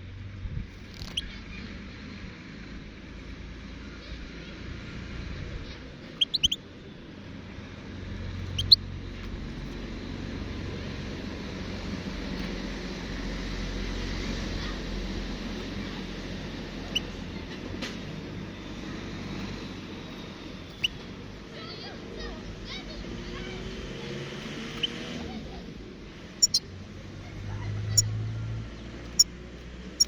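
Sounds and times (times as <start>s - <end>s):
finch chirping: 0.8s - 1.3s, 6.1s - 6.6s, 8.4s - 8.8s, 16.8s - 17.2s, 20.1s - 21.0s, 24.4s - 25.0s, 26.4s - 26.6s.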